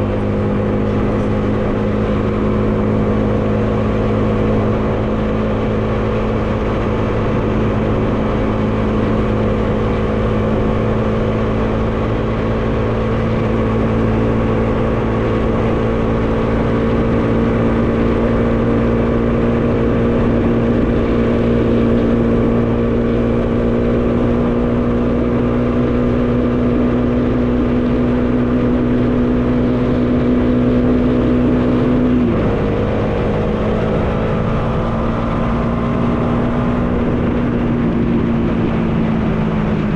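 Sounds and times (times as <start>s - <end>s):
motorcycle engine running: 0.0s - 39.9s
wind noise: 0.0s - 39.9s.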